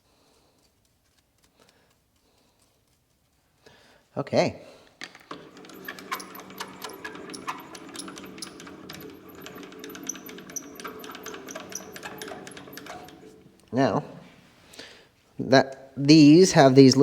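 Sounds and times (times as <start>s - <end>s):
light metallic clicks and rattles: 5.0s - 13.8s
metal lathe humming: 5.1s - 14.4s.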